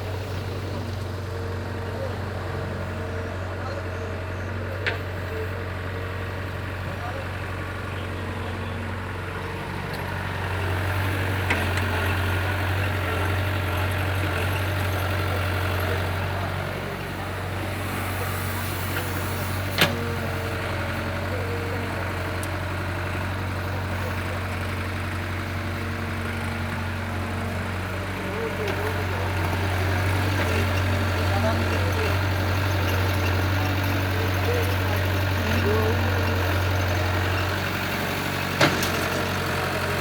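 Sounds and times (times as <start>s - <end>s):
excavator engine humming: 0.0s - 40.0s.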